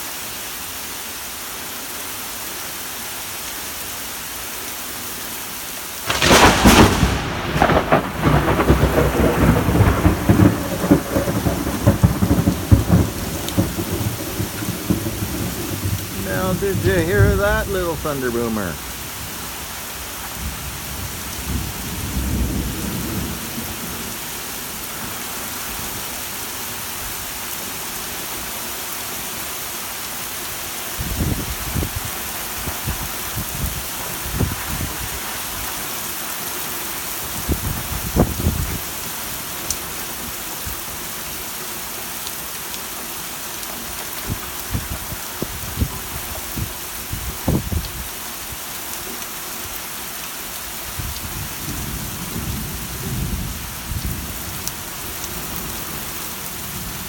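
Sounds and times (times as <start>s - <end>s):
steady rain hiss: 0.0s - 57.0s
thunder rumbles: 6.1s - 19.3s, 20.3s - 24.2s, 51.0s - 57.0s.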